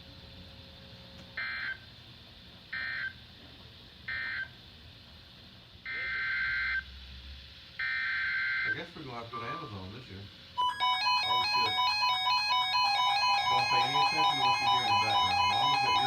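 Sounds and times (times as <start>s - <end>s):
raspy digital data tone bursts: 10.6s - 16.0s.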